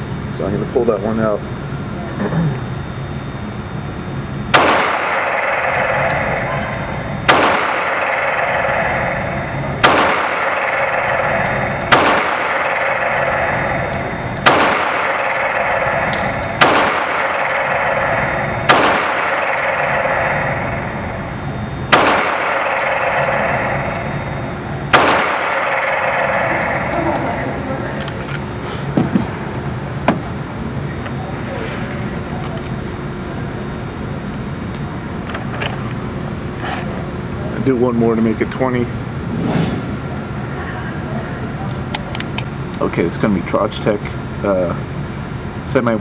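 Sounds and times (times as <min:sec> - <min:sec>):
pistol shots: 0:04.5 - 0:24.3, 0:24.9 - 0:27.4
steady rushing background noise: 0:04.6 - 0:33.5.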